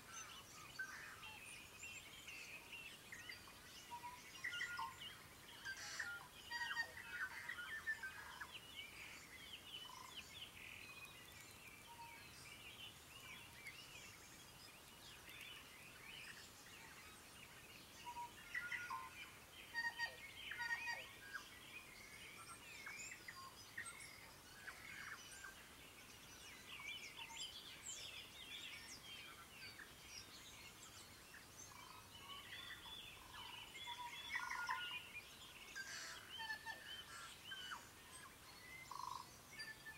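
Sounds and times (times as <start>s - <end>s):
songbirds dawn chorus: 0.0s - 39.9s.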